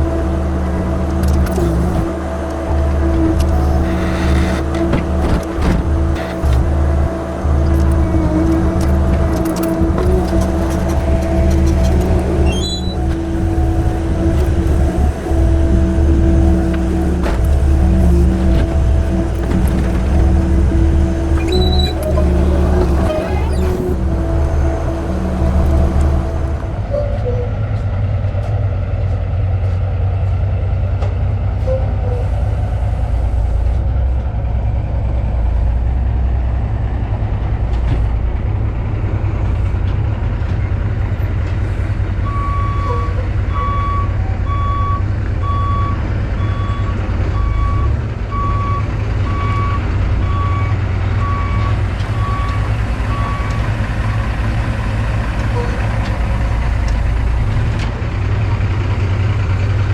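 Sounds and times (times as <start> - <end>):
skid steer engine running: 0.0 - 59.9
reversing alarm beeping: 42.2 - 54.3.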